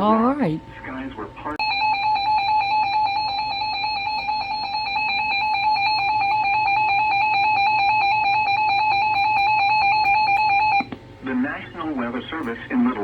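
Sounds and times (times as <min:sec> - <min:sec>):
two-tone electronic alarm tone: 0:01.6 - 0:10.9.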